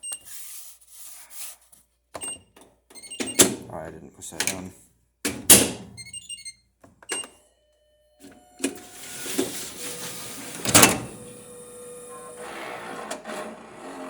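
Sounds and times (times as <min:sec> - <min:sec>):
dryer humming: 0:08.3 - 0:14.0.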